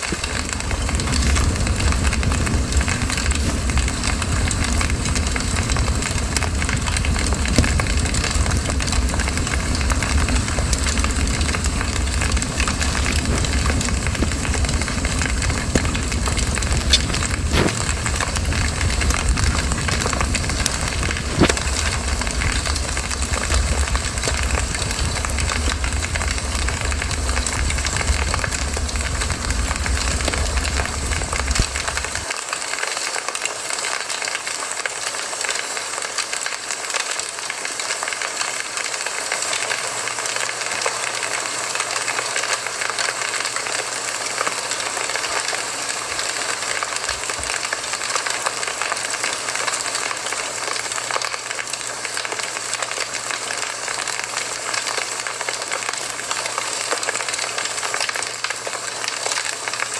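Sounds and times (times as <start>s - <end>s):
campfire crackling and hissing: 0.0s - 59.9s
deep low rumble: 0.4s - 32.3s.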